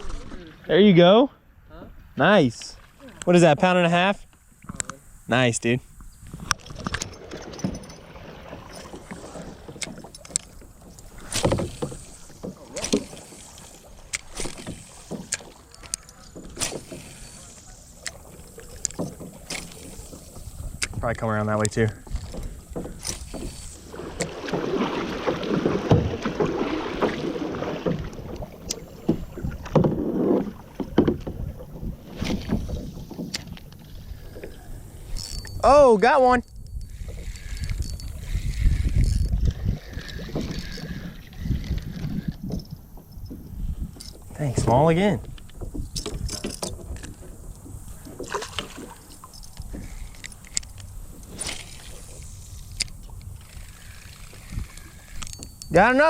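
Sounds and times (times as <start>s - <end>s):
paddle splashing water: 0.0s - 1.2s, 2.0s - 4.9s, 5.8s - 56.0s
knocks against hull: 11.2s - 13.1s, 22.0s - 33.6s
wind on microphone: 19.7s - 35.7s, 36.3s - 55.9s.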